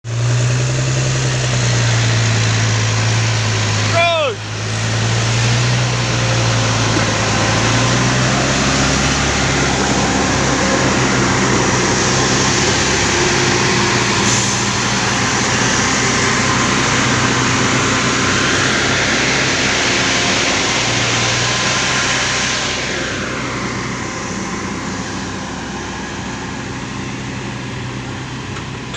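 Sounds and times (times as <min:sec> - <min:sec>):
truck diesel engines under load: 0:00.0 - 0:28.9.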